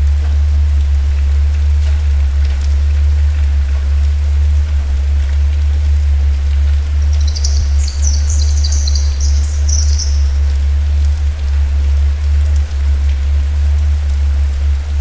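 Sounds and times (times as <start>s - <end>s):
deep low rumble: 0.0s - 15.0s
rain falling on leaves: 0.0s - 15.0s
songbird twittering: 7.0s - 10.6s.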